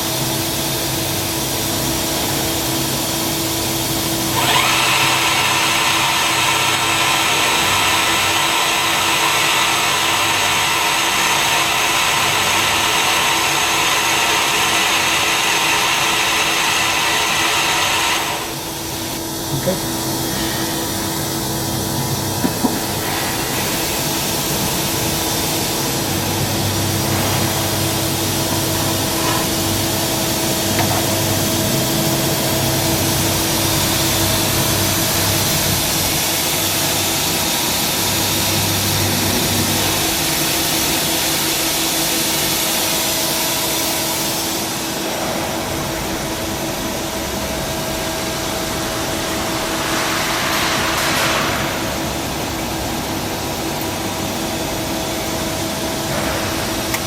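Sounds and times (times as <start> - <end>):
lathe hissing and humming: 0.0 - 57.0
low machine drone: 18.3 - 42.6.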